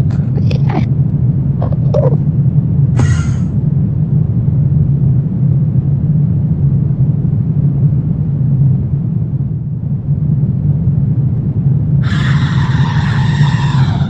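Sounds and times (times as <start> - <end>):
low rumbling horror drone: 0.0 - 14.0
high voice-like cry: 12.0 - 14.0.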